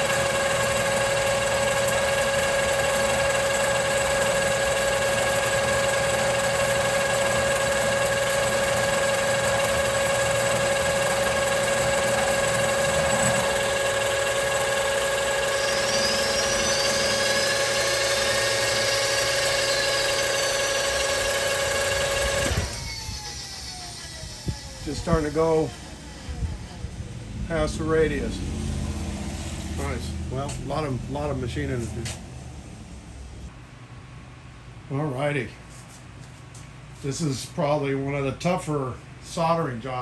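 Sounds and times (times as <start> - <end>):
machine tool cutting metal: 0.0 - 26.9.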